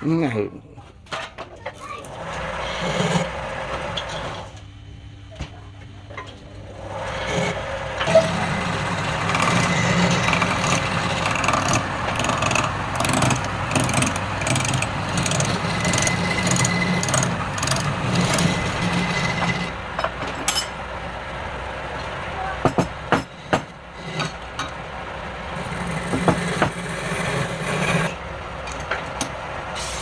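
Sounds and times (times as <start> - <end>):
tool scraping spinning wood: 2.0 - 4.6, 6.7 - 19.8, 22.9 - 24.9, 25.5 - 28.2
wood lathe running: 2.0 - 4.6, 6.6 - 19.9, 23.0 - 28.2.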